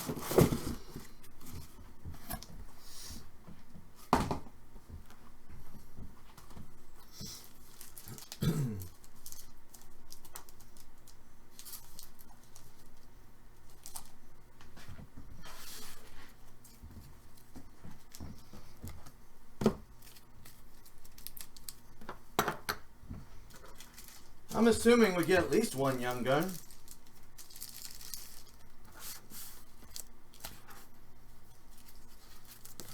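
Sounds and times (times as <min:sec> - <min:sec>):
packaging tearing and crinkling: 0:07.7 - 0:12.9, 0:20.0 - 0:21.8, 0:23.5 - 0:30.6, 0:31.7 - 0:32.9.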